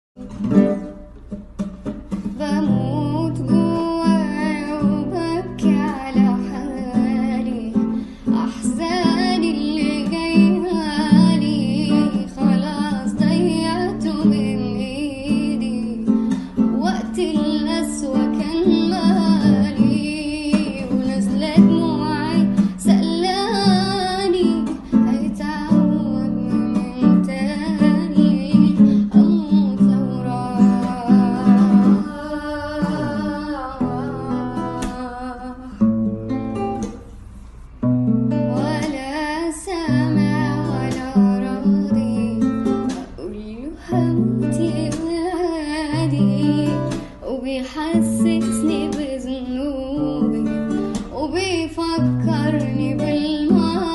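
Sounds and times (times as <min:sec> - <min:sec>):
acoustic guitar: 0:00.2 - 0:53.9
woman singing: 0:02.2 - 0:37.0, 0:38.3 - 0:53.9.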